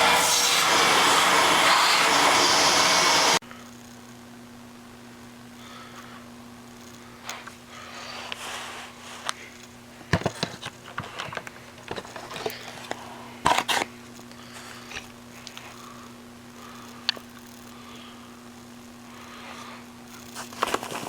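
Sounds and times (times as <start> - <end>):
objects being handled: 8.2 - 13.9, 20.2 - 21.0.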